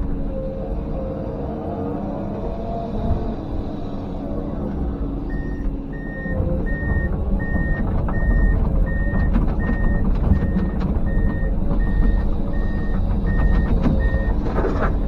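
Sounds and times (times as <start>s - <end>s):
diesel engine running: 0.0s - 15.0s
backup alarm beeping: 5.3s - 14.4s.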